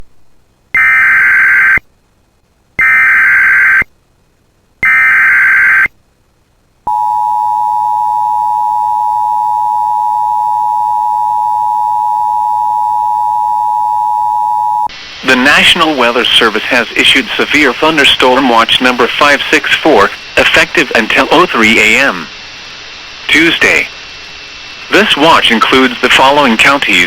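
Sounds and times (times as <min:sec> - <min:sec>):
screeching data tones: 0:00.8 - 0:01.8, 0:02.8 - 0:03.9, 0:04.8 - 0:05.9
two-tone attention signal: 0:00.8 - 0:01.8, 0:02.8 - 0:03.9, 0:04.8 - 0:05.9, 0:06.9 - 0:14.9.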